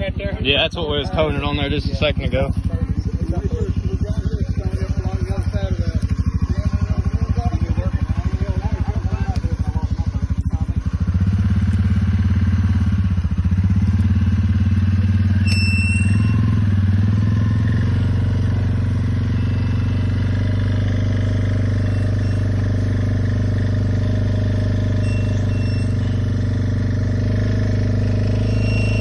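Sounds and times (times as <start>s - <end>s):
atv engine idling: 0.0s - 29.0s
short high squeak: 15.3s - 17.8s, 19.1s - 23.1s, 24.7s - 26.6s, 28.2s - 29.0s.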